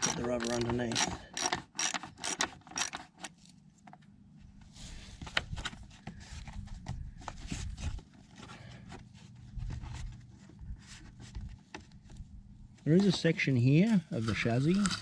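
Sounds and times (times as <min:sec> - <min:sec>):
ratchet wrench clicking: 0:00.0 - 0:03.0.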